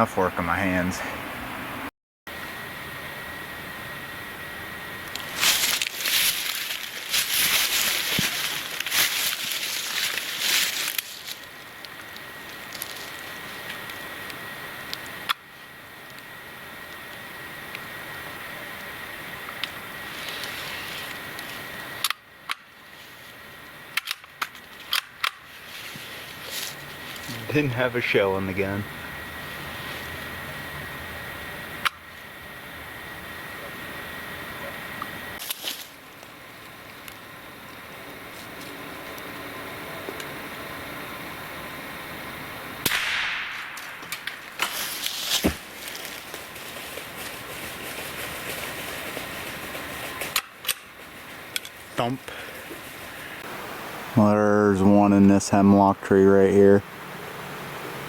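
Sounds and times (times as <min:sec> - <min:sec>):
rustling hiss: 0:02.4 - 0:58.0
rifle shot crack: 0:42.8 - 0:44.7.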